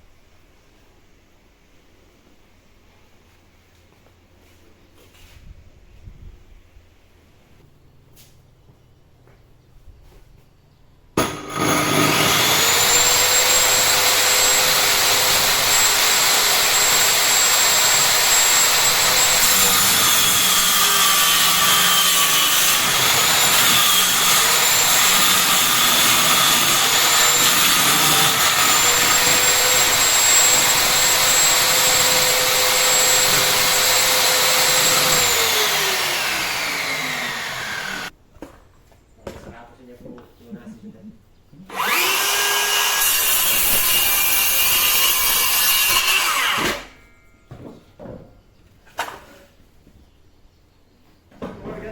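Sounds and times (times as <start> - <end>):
power tool whining: 11.2 - 38.1, 41.7 - 47.0.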